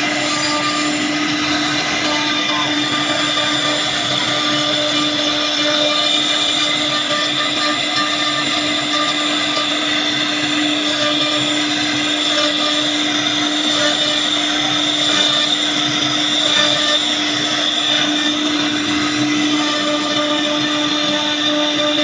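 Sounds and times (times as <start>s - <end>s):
router spindle whine: 0.0s - 22.0s.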